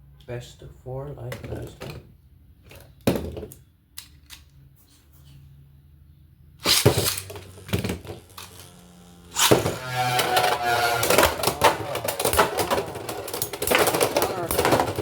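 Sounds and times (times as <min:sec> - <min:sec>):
spinning tops clattering and scraping: 0:06.6 - 0:08.7, 0:09.3 - 0:15.0.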